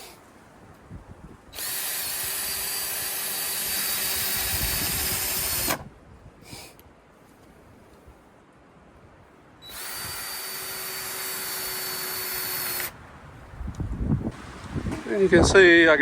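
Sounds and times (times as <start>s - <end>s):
drill driving screw into wood: 1.6s - 5.9s, 9.6s - 13.0s.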